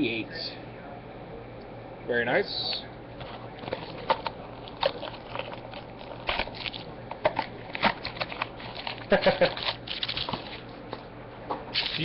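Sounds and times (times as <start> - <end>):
cards rustling: 3.2 - 10.7, 11.8 - 12.0
foil wrapper crinkling: 3.2 - 10.8, 11.7 - 12.0.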